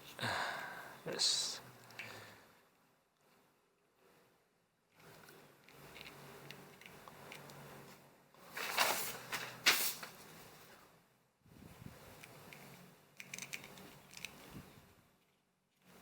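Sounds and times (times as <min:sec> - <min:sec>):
toy handling noise: 0:04.9 - 0:10.4, 0:12.0 - 0:16.0.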